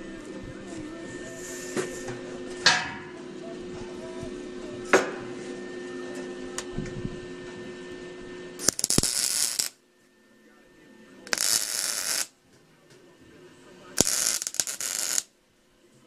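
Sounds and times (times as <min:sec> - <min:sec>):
electrical hum: 0:00.0 - 0:16.0
welding crackle: 0:08.6 - 0:09.8, 0:11.3 - 0:12.3, 0:14.0 - 0:15.3.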